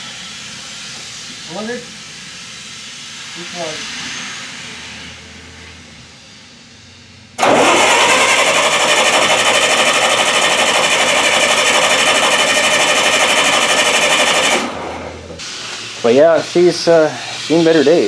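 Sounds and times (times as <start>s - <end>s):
starter cranking engine: 7.4s - 15.4s.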